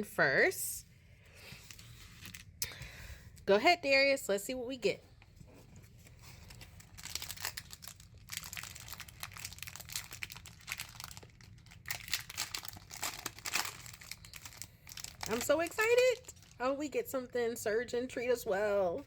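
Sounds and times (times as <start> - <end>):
foil wrapper crinkling: 1.5 - 2.6, 6.0 - 16.8.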